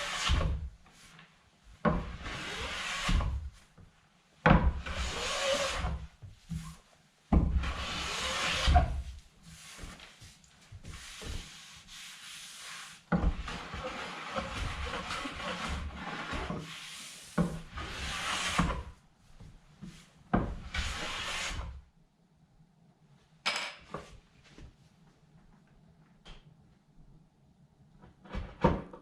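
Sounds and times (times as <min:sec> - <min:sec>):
scraping and rubbing wood: 0:00.0 - 0:01.2, 0:01.8 - 0:03.5, 0:04.5 - 0:18.9, 0:19.8 - 0:21.8.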